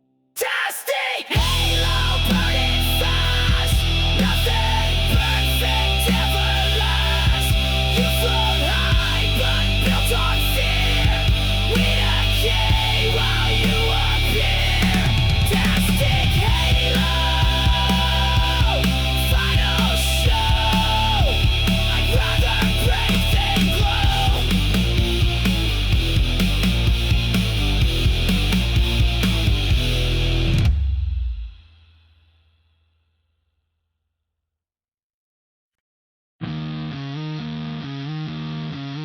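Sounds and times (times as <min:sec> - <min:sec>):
distorted rock music: 0:01.3 - 0:31.5, 0:36.4 - 0:39.0
bending lead guitar lines: 0:36.4 - 0:39.0.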